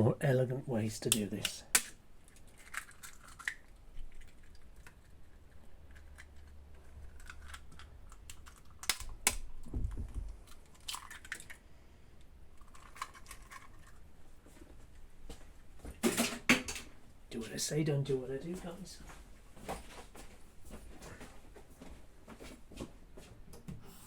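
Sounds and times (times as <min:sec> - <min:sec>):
eggshells tapped and cracking: 0:01.1 - 0:11.6.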